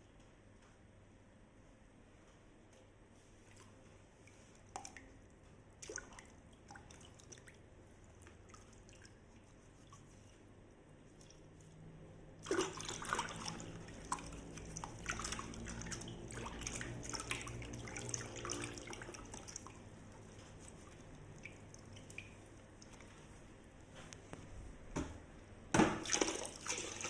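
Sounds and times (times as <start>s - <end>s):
water splashing into sink: 4.3s - 10.1s, 12.4s - 23.3s, 25.8s - 27.0s.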